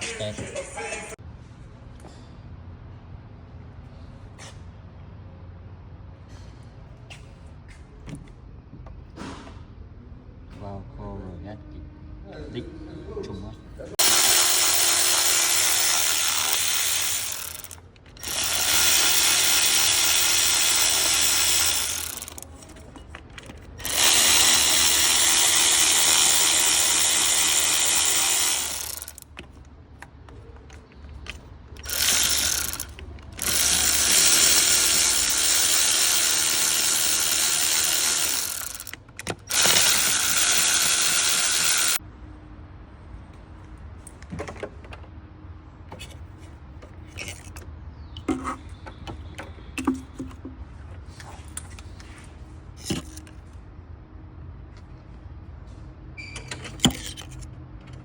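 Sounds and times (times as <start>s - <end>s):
power ratchet running: 14.0s - 22.6s, 23.4s - 29.5s, 31.2s - 42.0s.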